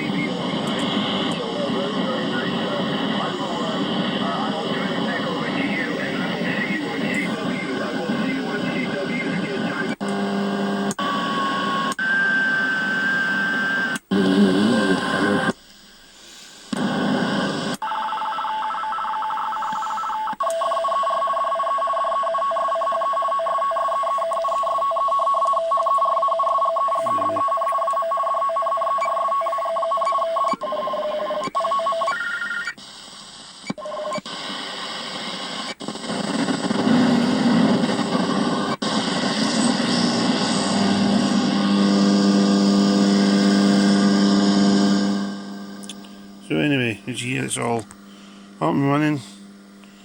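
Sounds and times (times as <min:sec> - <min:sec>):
sharp radio clicks: 0:00.0 - 0:10.2
radio band noise hiss: 0:00.0 - 0:17.8, 0:19.3 - 0:20.4, 0:26.8 - 0:27.9, 0:29.0 - 0:31.5, 0:32.1 - 0:50.0
two-tone data signal chattering: 0:19.0 - 0:32.8.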